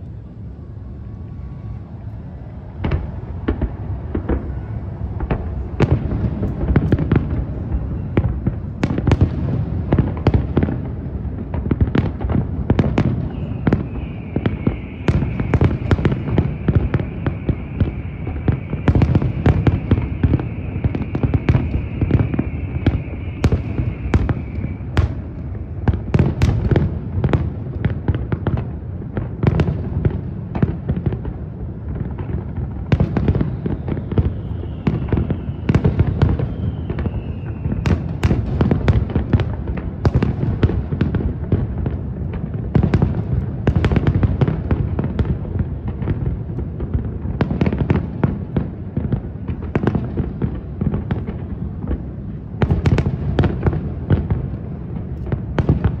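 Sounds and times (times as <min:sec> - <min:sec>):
steady high whistle: 0:00.0 - 0:27.3, 0:32.8 - 0:39.4
fireworks bursting: 0:00.0 - 0:56.0.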